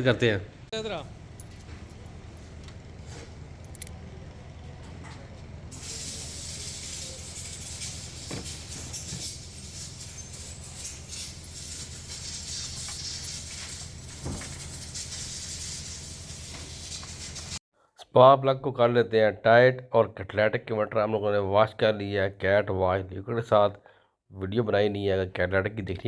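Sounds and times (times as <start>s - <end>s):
steady low hum: 0.4s - 12.5s.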